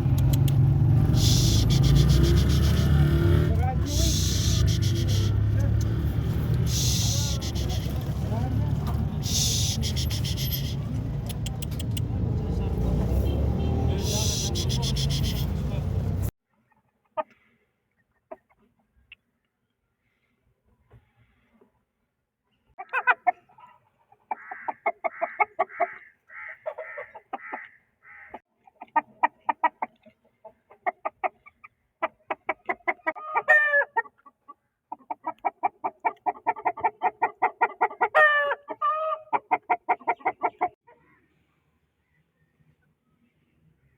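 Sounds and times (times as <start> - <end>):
chicken clucking: 22.8 - 41.0
chicken rising and falling calls: 35.0 - 40.8.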